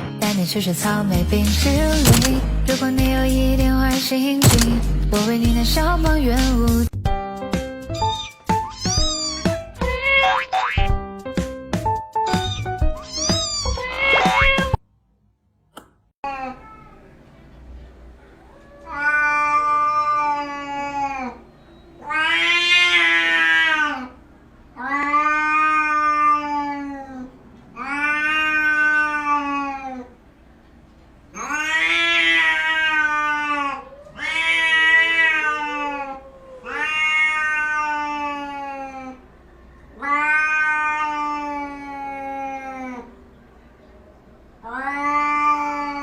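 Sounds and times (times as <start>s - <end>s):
cat yowling: 7.9s - 10.8s, 12.3s - 14.8s, 18.5s - 24.2s, 24.8s - 30.2s, 31.4s - 39.2s, 40.0s - 43.1s, 44.6s - 46.0s.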